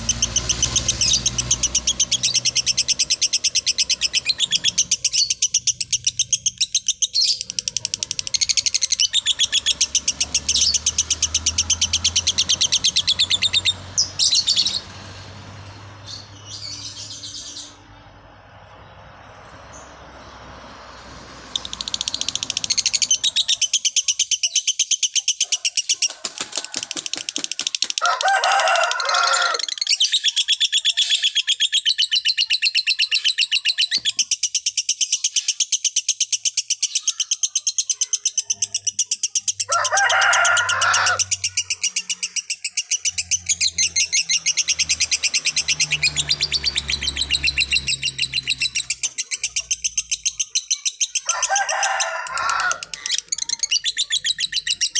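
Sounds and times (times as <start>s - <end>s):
lovebird chattering trill: 0.0s - 14.9s, 21.5s - 39.7s, 52.1s - 54.9s.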